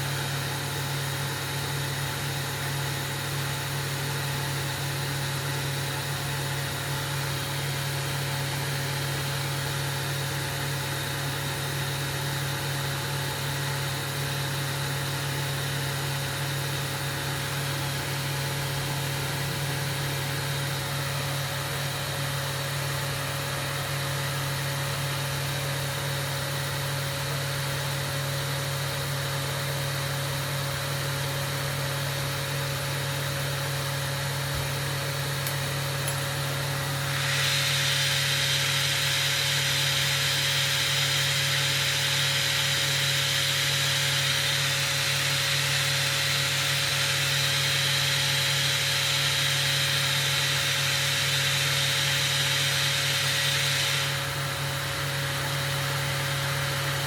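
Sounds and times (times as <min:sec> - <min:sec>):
gas burner hiss: 0:34.4 - 0:57.0.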